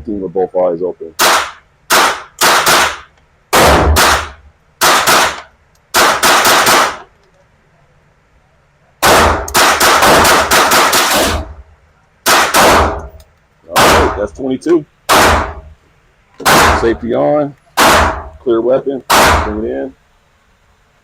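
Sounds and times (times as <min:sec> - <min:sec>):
rifle shots: 0:01.2 - 0:07.1, 0:09.0 - 0:11.6, 0:12.2 - 0:14.3, 0:15.1 - 0:15.7, 0:16.4 - 0:17.0, 0:17.8 - 0:18.4, 0:19.0 - 0:19.8.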